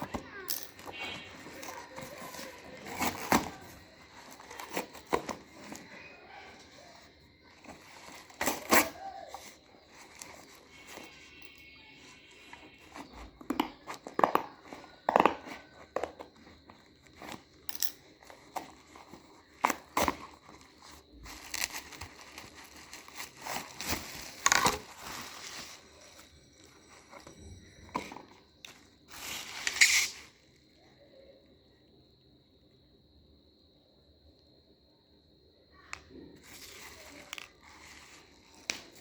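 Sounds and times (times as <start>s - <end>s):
packaging clicks: 0.0s - 27.3s
packaging crinkling and rustling: 0.0s - 30.5s, 36.4s - 39.0s
packaging tearing: 0.1s - 5.9s, 7.5s - 11.3s, 18.2s - 25.9s, 29.1s - 30.3s.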